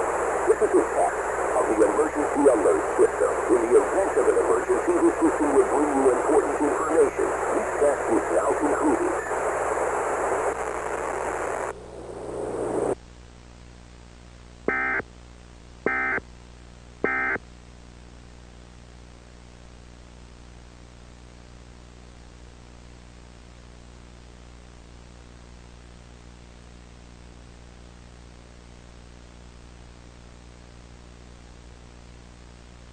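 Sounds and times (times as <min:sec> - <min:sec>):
static-laden radio audio: 0:00.0 - 0:13.0
low hiss and hum: 0:00.0 - 0:32.9.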